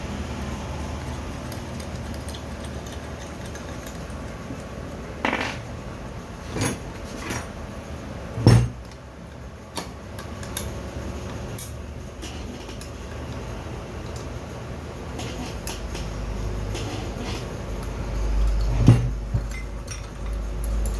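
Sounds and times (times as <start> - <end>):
metal parts clinking on workbench: 5.2 - 5.7, 16.8 - 20.9.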